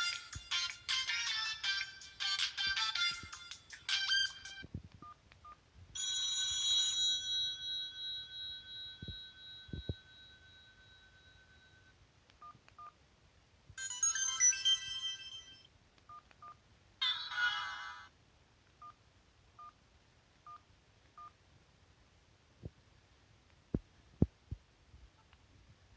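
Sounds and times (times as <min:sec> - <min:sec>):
ringtone chime: 0:00.0 - 0:04.6, 0:06.0 - 0:11.9, 0:13.8 - 0:15.7.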